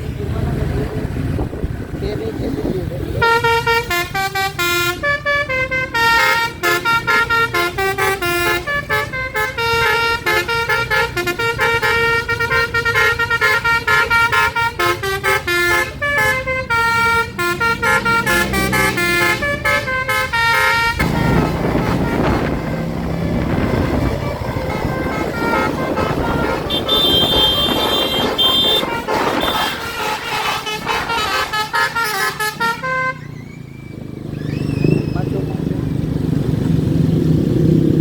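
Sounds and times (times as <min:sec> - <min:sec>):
bus air horn melody: 0:03.2 - 0:33.4.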